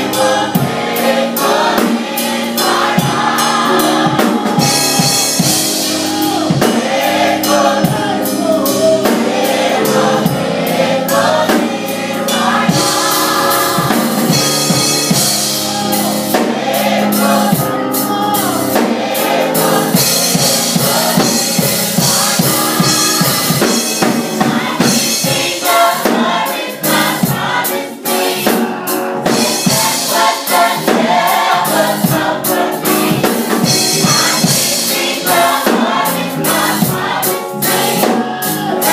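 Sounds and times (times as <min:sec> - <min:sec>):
drum kit and band: 0:00.0 - 0:38.9
gospel choir singing: 0:00.0 - 0:38.9.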